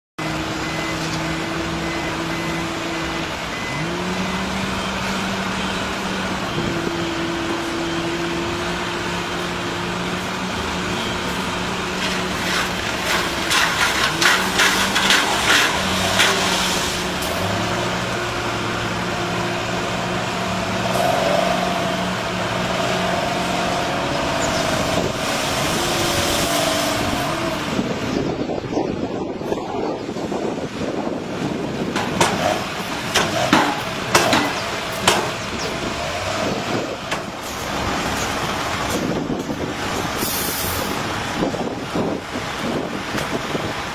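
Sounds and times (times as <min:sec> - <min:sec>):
diesel machinery engine: 0:00.2 - 0:43.9
rapid clattering: 0:12.0 - 0:17.7, 0:31.7 - 0:35.8.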